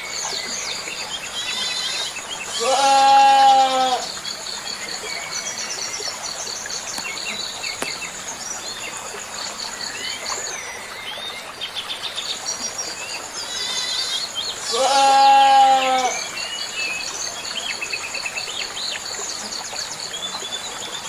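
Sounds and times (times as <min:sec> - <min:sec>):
goat bleating: 0:02.6 - 0:04.1, 0:14.7 - 0:16.1
small birds chirping: 0:04.2 - 0:21.0.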